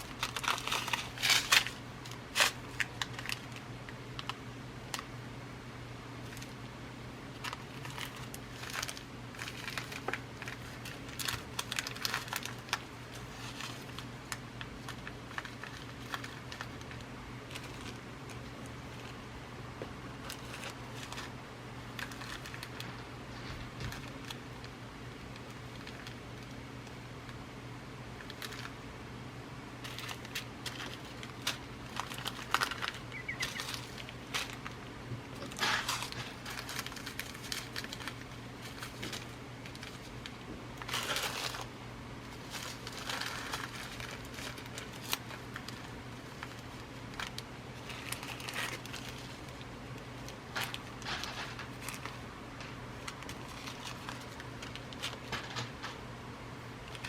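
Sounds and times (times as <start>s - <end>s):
bead packets rustling and crinkling: 0.0s - 3.6s, 7.4s - 19.2s, 20.2s - 24.7s, 29.8s - 56.0s
steady low hum: 0.0s - 57.0s.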